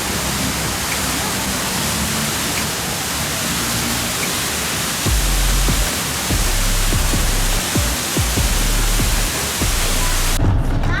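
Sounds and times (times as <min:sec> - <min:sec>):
waterfall roaring: 0:00.0 - 0:10.4
deep bass music note: 0:05.1 - 0:07.6.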